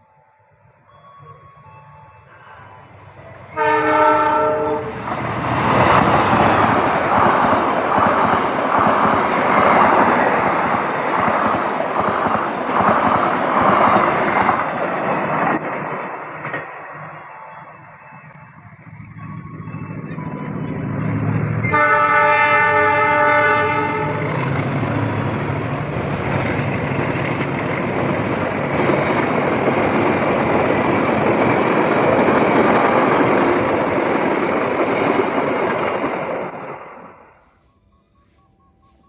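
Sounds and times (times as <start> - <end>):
train wheels clattering over rails: 3.1 - 17.2, 20.0 - 37.6
train horn: 3.5 - 5.2, 21.6 - 24.8.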